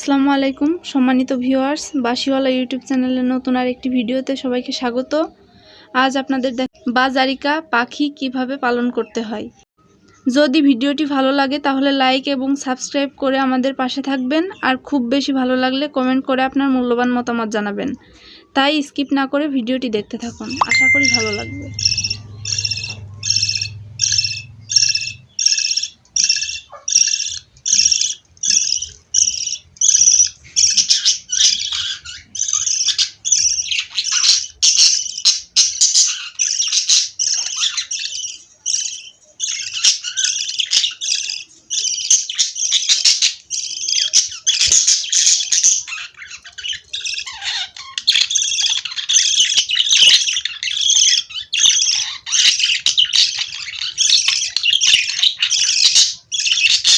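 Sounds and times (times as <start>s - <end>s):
budgerigars chattering and squawking: 20.3s - 56.9s.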